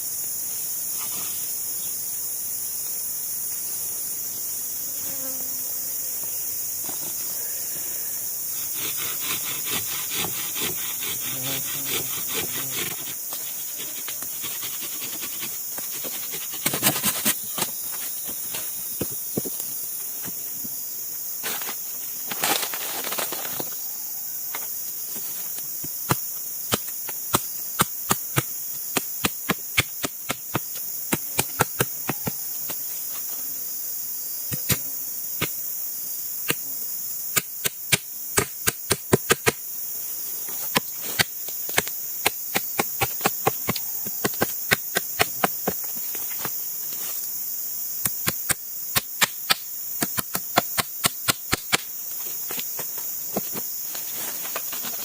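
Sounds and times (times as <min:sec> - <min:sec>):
insect chorus drone: 0:00.0 - 0:55.0
wood rasping: 0:08.6 - 0:17.4.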